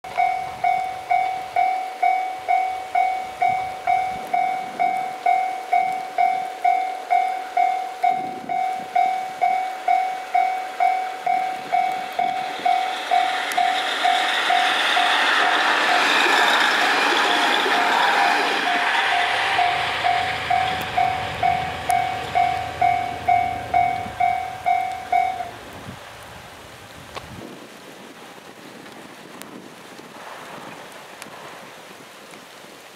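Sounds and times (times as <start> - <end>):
level crossing warning bell: 0.1 - 25.6
diesel railcar passing: 0.1 - 27.2.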